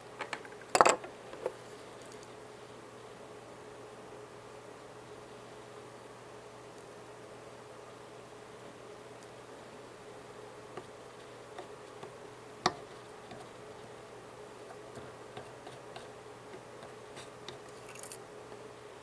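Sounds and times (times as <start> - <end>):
faint hum: 0.0 - 19.0
small tools clicking and tapping: 15.4 - 18.2.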